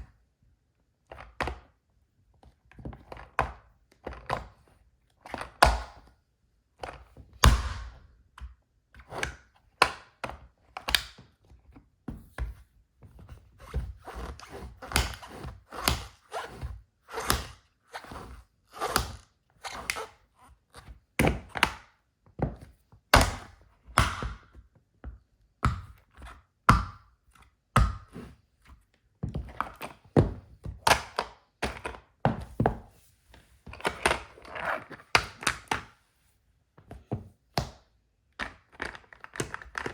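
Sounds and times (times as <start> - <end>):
heels stomping on plastic toy: 7.4 - 8.1.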